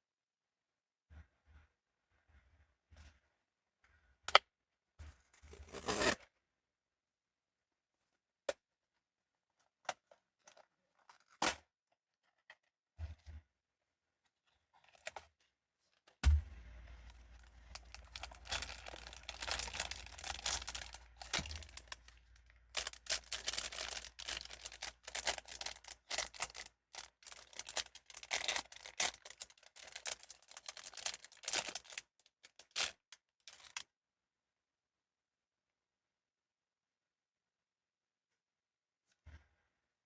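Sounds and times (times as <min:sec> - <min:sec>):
packaging crinkling and rustling: 0:05.5 - 0:06.2, 0:17.0 - 0:33.8.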